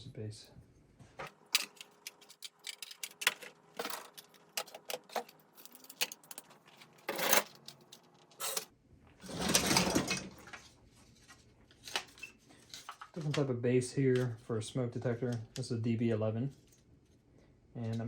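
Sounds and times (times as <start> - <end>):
plastic devices clicking and clattering: 1.3 - 8.7.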